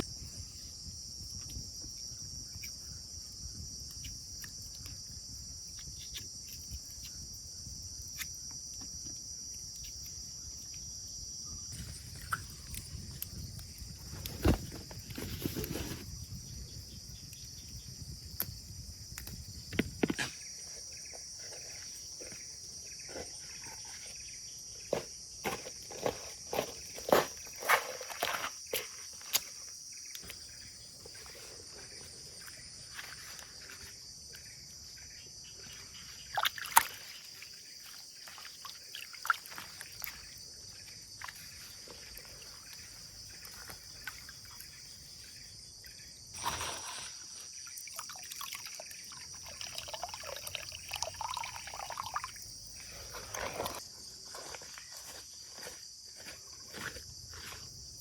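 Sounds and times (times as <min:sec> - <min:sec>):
insects chorus: 0:00.0 - 0:58.0
water pouring: 0:46.4 - 0:52.4.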